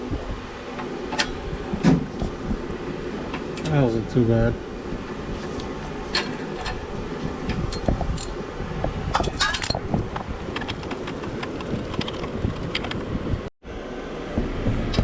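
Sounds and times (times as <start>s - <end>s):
steady low hum: 0.0s - 15.0s
metal tools clinking: 9.2s - 9.8s.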